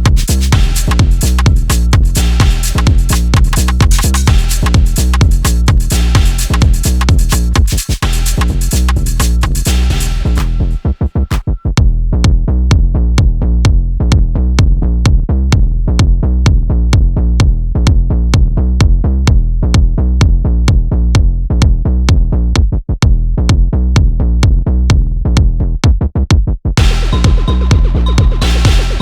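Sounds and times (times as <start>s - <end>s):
electronic dance music: 0.0s - 11.6s, 26.8s - 29.0s.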